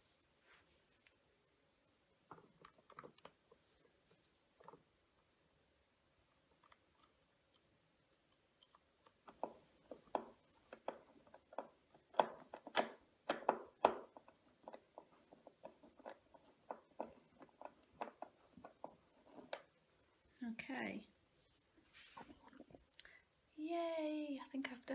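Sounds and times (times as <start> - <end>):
screwdriver clicks and taps on plastic: 9.2 - 19.6.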